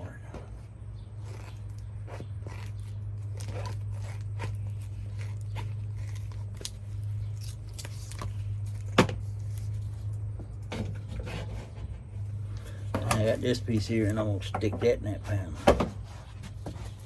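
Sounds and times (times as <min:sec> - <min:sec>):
steady low hum: 0:00.0 - 0:17.0
materials clicking and crinkling: 0:02.5 - 0:11.1.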